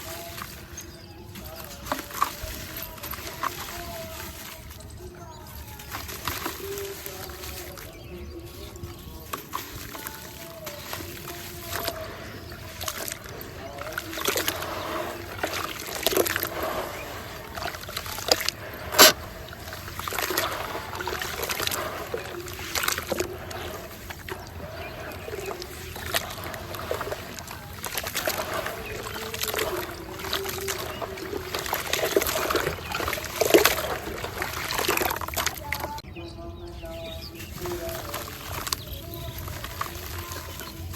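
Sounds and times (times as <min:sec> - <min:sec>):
concrete crunching clicks: 0:00.0 - 0:36.0
concrete splashing into water: 0:05.8 - 0:36.0.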